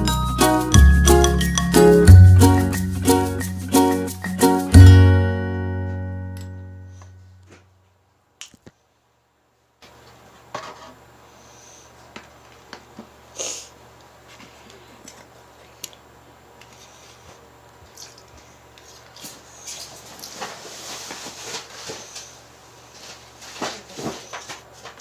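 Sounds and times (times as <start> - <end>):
ukulele chord: 0.0 - 7.4.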